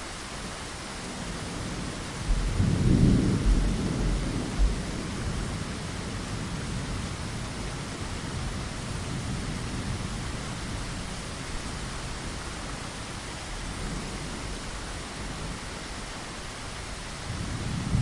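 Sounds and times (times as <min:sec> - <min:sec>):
rain against a window: 0:00.0 - 0:18.0
thunder rumble: 0:02.2 - 0:07.5, 0:17.3 - 0:18.0.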